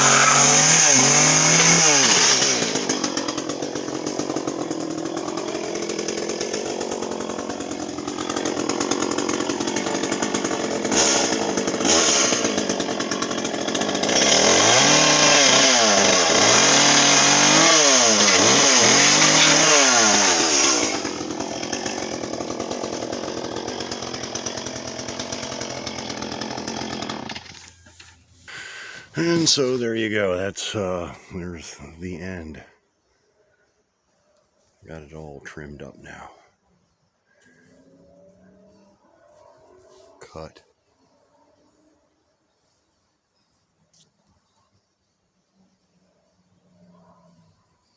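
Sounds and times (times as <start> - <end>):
chainsaw revving: 0.0 - 27.7, 28.5 - 31.1.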